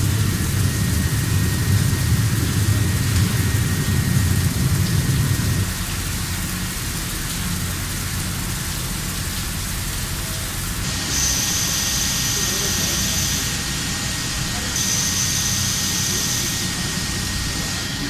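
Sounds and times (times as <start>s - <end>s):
high whine: 10.8s - 18.0s
machine cutting metal hiss: 10.8s - 18.0s.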